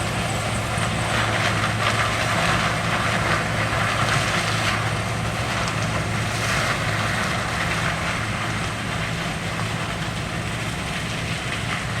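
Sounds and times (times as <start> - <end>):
engine humming steadily: 0.0 - 12.0.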